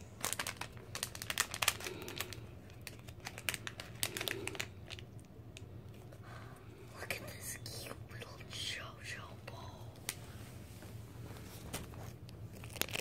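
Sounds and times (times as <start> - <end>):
plastic packaging crinkling: 0.0 - 5.3, 11.5 - 13.0.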